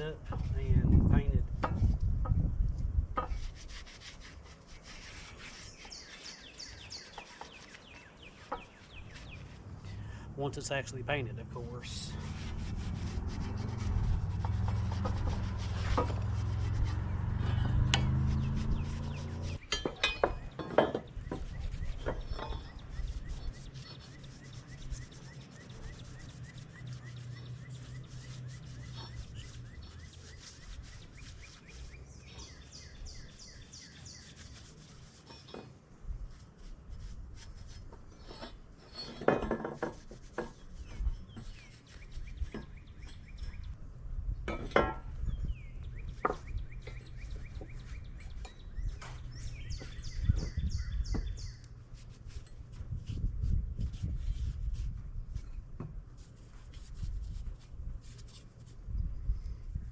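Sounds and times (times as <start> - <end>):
birds chirping: 4.8 - 12.3, 13.7 - 35.7, 40.2 - 43.8, 45.1 - 51.8
hand scrubbing metal part: 10.5 - 43.3.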